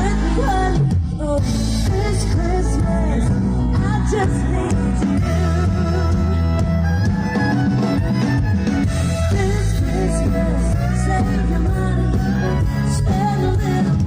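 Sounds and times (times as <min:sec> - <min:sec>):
person singing: 0:00.0 - 0:07.9, 0:08.9 - 0:14.0
live band pop song: 0:00.0 - 0:14.0.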